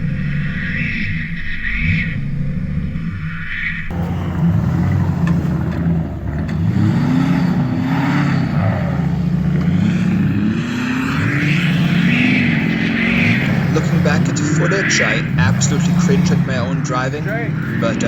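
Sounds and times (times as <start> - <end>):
truck engine revving: 3.9 - 18.0.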